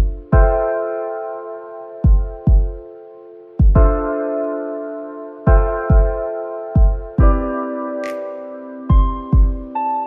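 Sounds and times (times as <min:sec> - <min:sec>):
deep kick drum beats: 0:00.0 - 0:00.7, 0:02.0 - 0:02.8, 0:03.6 - 0:04.2, 0:05.5 - 0:07.6, 0:08.9 - 0:09.7.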